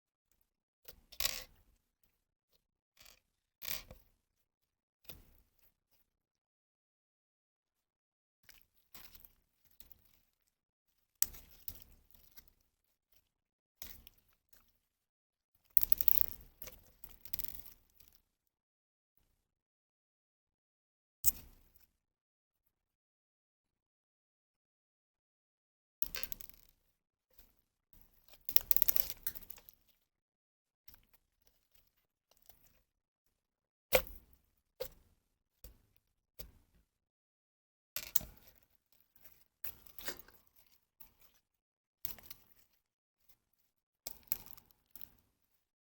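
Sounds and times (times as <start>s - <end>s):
slime crackling and squishing: 28.6s - 29.5s.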